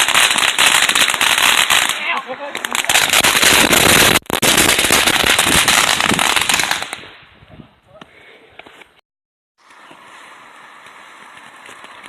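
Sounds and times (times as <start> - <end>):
fireworks crackling: 0.0 - 7.4, 9.6 - 12.0.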